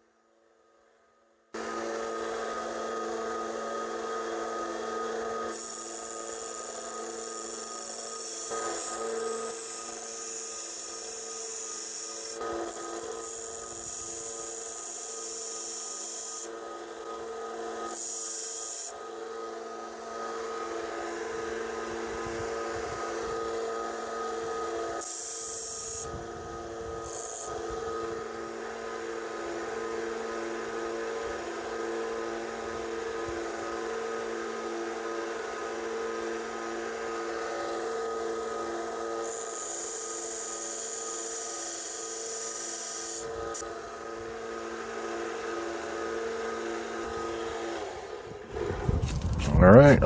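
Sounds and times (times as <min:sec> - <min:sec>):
electric grinder motor hum: 0:01.6 - 0:49.4.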